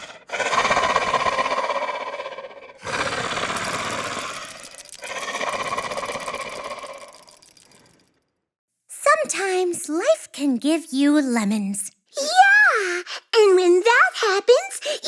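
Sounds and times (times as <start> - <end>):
rapid buzzing rattle: 2.8 - 8.3.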